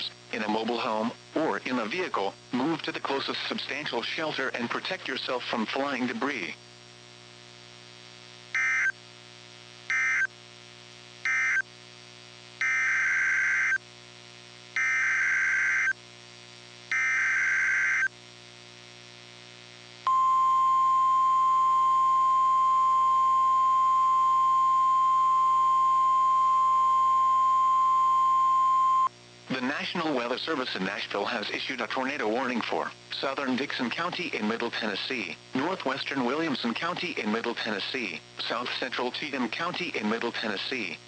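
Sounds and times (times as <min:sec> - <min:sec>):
steady single-pitch alarm tone: 0:08.5 - 0:09.0, 0:09.9 - 0:10.3, 0:11.2 - 0:11.6, 0:12.6 - 0:13.8, 0:14.8 - 0:16.0, 0:16.9 - 0:18.1, 0:20.1 - 0:29.1.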